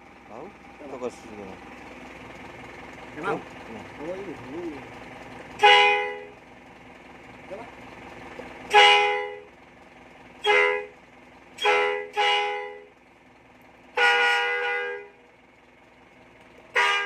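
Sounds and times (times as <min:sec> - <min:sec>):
two-tone bus horn blasts: 0:05.6 - 0:06.4, 0:08.7 - 0:09.6, 0:10.4 - 0:11.0, 0:11.6 - 0:13.0, 0:13.9 - 0:15.2, 0:16.7 - 0:17.0.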